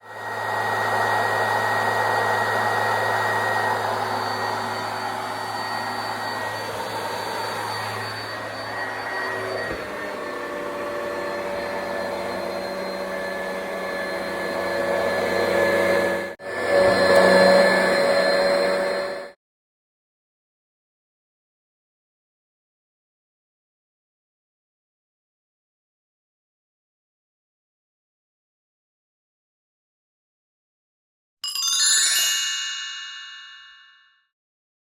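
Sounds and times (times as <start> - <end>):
upright vacuum cleaner running: 0.0 - 19.4.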